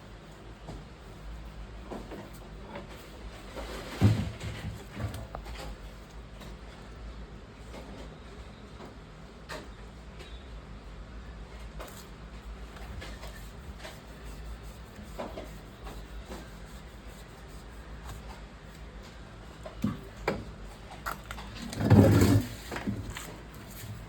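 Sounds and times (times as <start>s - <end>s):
objects being handled: 12.7s - 24.0s.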